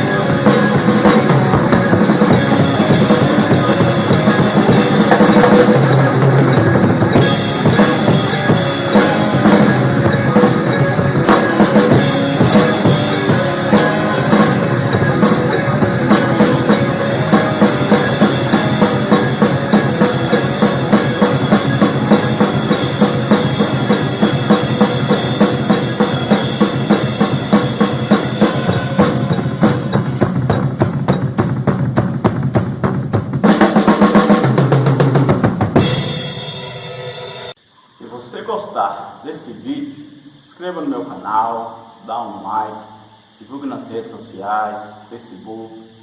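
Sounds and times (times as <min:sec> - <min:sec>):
drum kit playing: 0:00.0 - 0:38.0.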